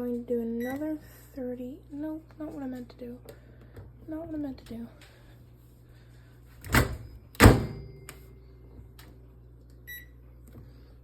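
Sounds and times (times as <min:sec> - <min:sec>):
microwave oven humming: 0:00.0 - 0:11.0
microwave door clunks: 0:06.7 - 0:08.1.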